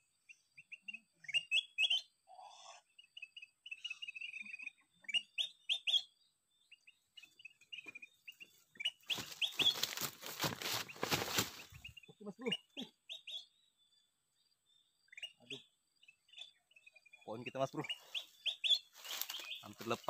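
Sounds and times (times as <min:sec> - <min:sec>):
small songbird chirping: 0:00.0 - 0:20.0
loud rustling and scraping: 0:09.2 - 0:11.8.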